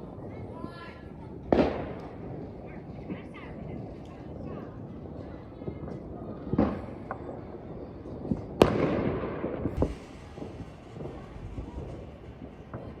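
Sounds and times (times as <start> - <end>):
fireworks bangs: 0.0 - 13.0
small firecracker pops: 1.5 - 4.4, 5.1 - 7.5, 8.1 - 13.0.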